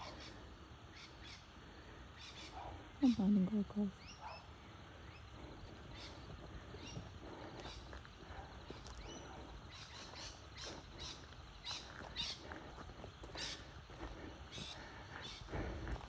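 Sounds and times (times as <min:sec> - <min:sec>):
steady low rumble: 0:04.6 - 0:16.0
birds harsh scratchy calls: 0:09.0 - 0:15.7.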